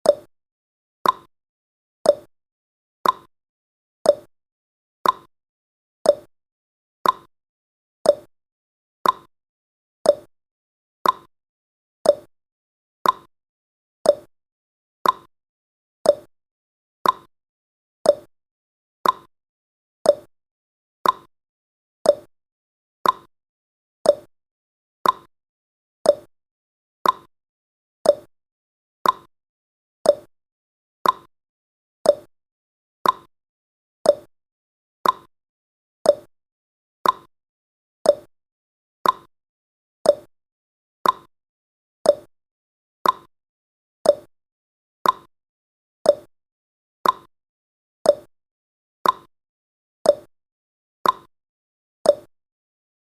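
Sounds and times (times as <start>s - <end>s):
timer ticking: 0.0s - 0.3s, 1.0s - 1.3s, 2.1s - 2.3s, 3.0s - 3.3s, 4.1s - 4.3s, 5.0s - 5.3s, 6.1s - 6.3s, 7.0s - 7.3s, 8.1s - 8.3s, 9.0s - 9.3s, 10.1s - 10.3s, 11.0s - 11.3s, 12.0s - 12.3s, 13.0s - 13.3s, 14.1s - 14.3s, 15.0s - 15.3s, 16.0s - 16.3s, 17.0s - 17.3s, 18.0s - 18.3s, 19.0s - 19.3s, 20.1s - 20.3s, 21.0s - 21.3s, 22.0s - 22.3s, 23.0s - 23.3s, 24.0s - 24.3s, 25.0s - 25.3s, 26.0s - 26.3s, 27.0s - 27.3s, 28.0s - 28.3s, 29.0s - 29.3s, 30.0s - 30.3s, 31.0s - 31.3s, 32.0s - 32.3s, 33.0s - 33.3s, 34.0s - 34.3s, 35.0s - 35.3s, 36.0s - 36.3s, 37.0s - 37.3s, 38.0s - 38.3s, 39.0s - 39.3s, 40.0s - 40.3s, 41.0s - 41.3s, 42.0s - 42.3s, 43.0s - 43.3s, 44.0s - 44.3s, 45.0s - 45.3s, 46.1s - 46.3s, 47.0s - 47.3s, 48.1s - 48.3s, 49.0s - 49.3s, 50.1s - 50.3s, 51.0s - 51.3s, 52.1s - 52.3s.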